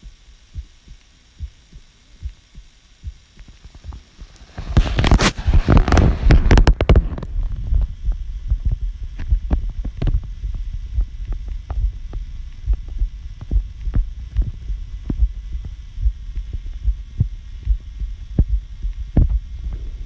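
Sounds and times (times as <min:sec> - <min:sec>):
heartbeat thumps: 0:00.0 - 0:20.0
rustling scraping noise: 0:03.8 - 0:07.6.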